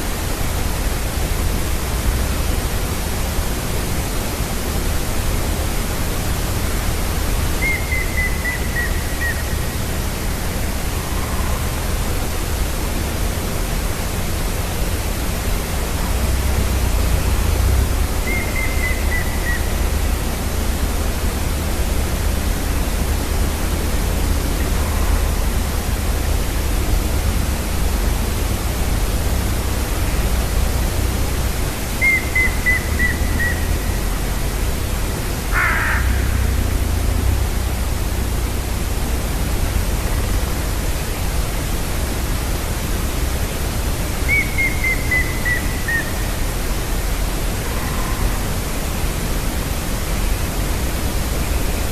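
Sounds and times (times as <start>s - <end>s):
background noise with low rumble: 0.0s - 51.9s
woodpecker whistled song: 7.6s - 9.8s, 18.2s - 20.0s, 32.0s - 34.3s, 44.2s - 46.3s.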